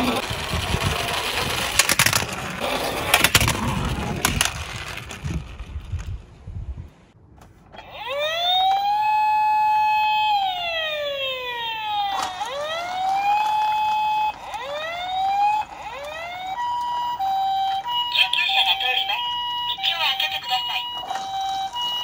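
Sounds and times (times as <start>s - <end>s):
toy electronic siren: 7.8s - 22.0s.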